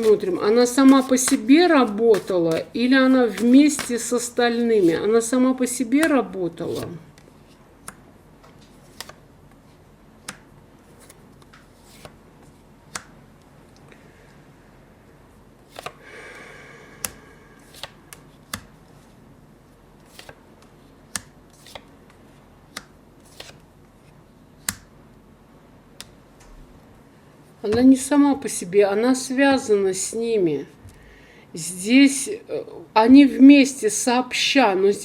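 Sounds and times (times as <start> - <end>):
cards snapping and tapping: 0.0 - 2.7, 7.8 - 9.2, 10.2 - 12.2, 12.9 - 13.2, 15.7 - 16.0, 17.0 - 18.8, 20.1 - 23.6, 24.6 - 24.9, 26.0 - 26.2
cards shuffling rustle: 0.0 - 5.1, 6.7 - 13.1, 15.6 - 16.0, 17.0 - 19.2, 20.0 - 21.9, 22.8 - 24.8.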